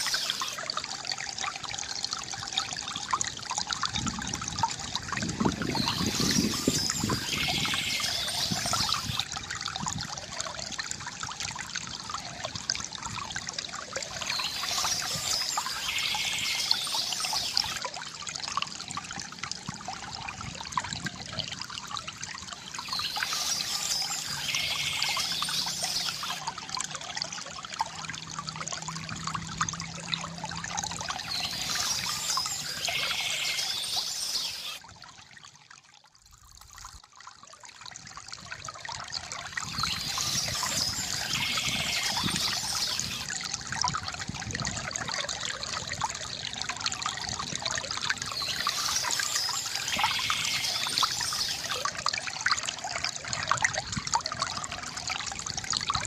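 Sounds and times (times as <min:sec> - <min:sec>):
stream trickling over stones: 0:00.0 - 0:56.0
songbird chirping: 0:31.2 - 0:34.8.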